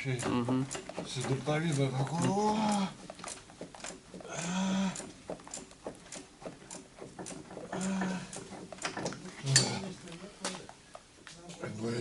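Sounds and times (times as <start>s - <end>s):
hand tools clicking on bolts: 0.0s - 9.8s.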